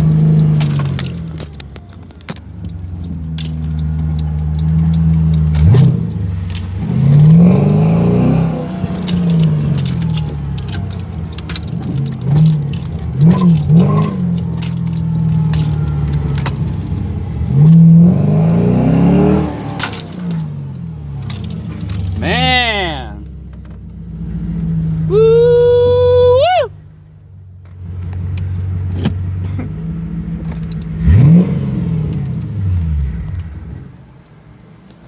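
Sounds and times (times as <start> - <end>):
person talking: 22.2 - 23.3, 25.1 - 26.7
car engine revving: 30.0 - 32.8.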